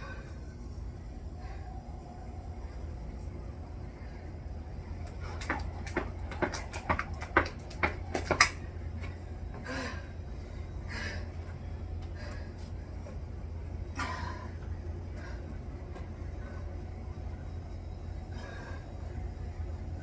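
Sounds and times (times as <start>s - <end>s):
steady low rumble: 0.0s - 20.0s
jump rope slapping the ground: 5.0s - 8.7s
heavy breaths: 9.1s - 13.2s, 14.0s - 17.0s, 18.2s - 19.4s.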